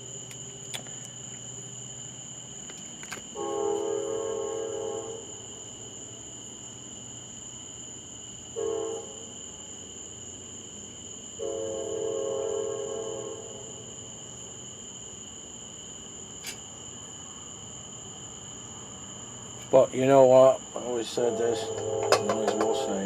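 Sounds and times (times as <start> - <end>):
crickets chirping: 0.0 - 23.0
distant train horn blasts: 3.4 - 5.4, 8.5 - 9.3, 11.4 - 13.8, 20.8 - 23.0.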